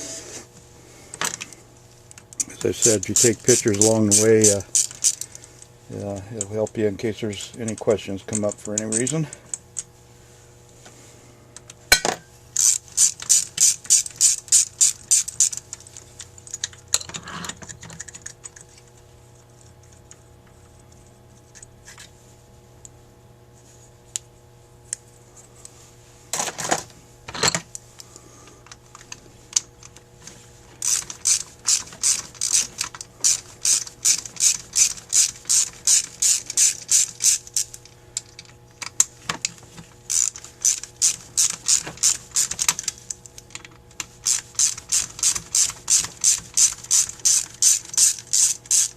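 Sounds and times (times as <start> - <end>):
hand ratchet clicking: 2.4 - 5.4, 7.5 - 9.9, 12.6 - 16.8, 30.8 - 48.9
tools set down on bench: 11.9 - 12.3.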